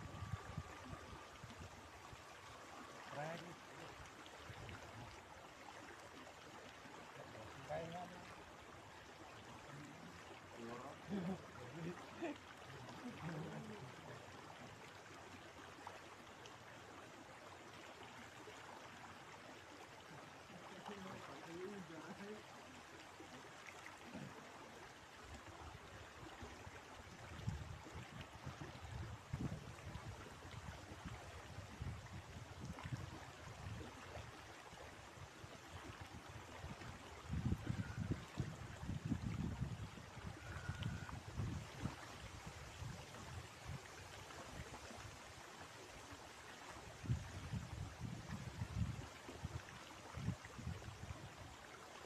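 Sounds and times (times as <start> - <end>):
wind buffeting microphone: 0.0 - 2.1, 27.3 - 33.2, 37.2 - 43.8, 47.0 - 49.0
faint river water flowing: 0.0 - 52.0.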